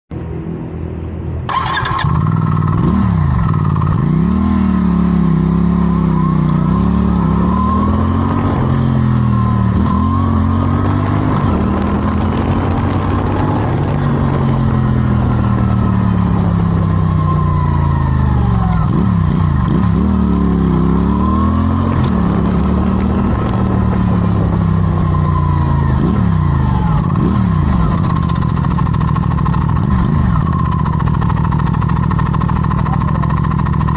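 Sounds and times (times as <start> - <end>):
motorcycle engine revving: 1.5 - 33.9.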